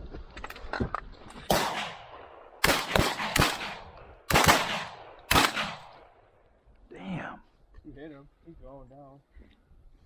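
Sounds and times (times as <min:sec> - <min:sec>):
shotgun blasts echoing: 0:01.5 - 0:06.4.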